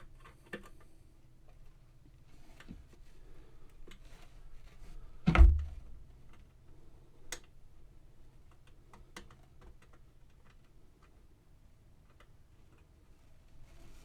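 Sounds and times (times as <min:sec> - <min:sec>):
dull thump: 0:05.2 - 0:05.8
small clicks and taps: 0:08.4 - 0:11.2, 0:12.0 - 0:12.9.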